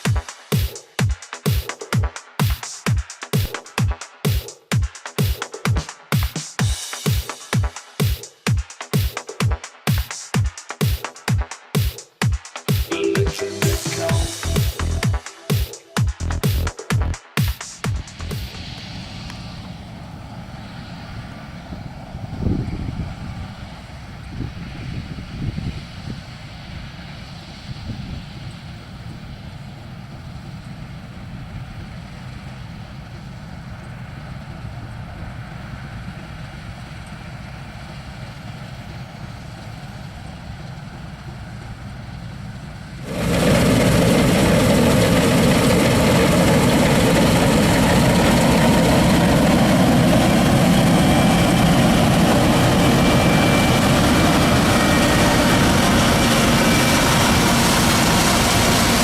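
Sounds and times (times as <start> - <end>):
combine harvester rumbling: 29.6 - 59.0.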